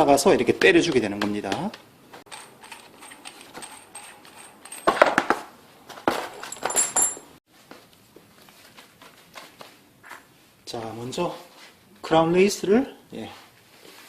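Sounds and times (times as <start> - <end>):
metal parts clinking and knocking: 2.3 - 5.4, 6.2 - 7.3.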